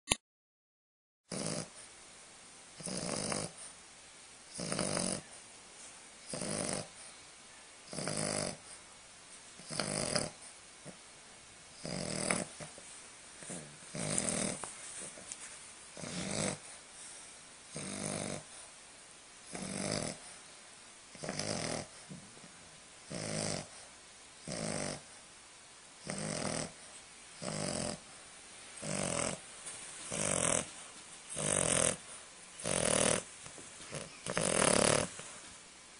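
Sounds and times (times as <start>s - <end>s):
puppy snoring: 1.3s - 2.0s, 2.8s - 3.8s, 4.5s - 5.4s, 6.2s - 7.2s, 7.8s - 8.9s, 9.6s - 11.0s, 11.8s - 18.8s, 19.4s - 20.4s, 21.1s - 25.3s, 26.0s - 28.2s, 28.8s - 35.5s.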